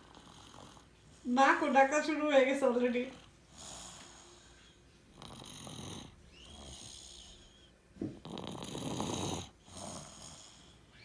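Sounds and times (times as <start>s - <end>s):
baby snoring: 0.0s - 0.9s, 5.1s - 7.6s, 8.2s - 10.8s.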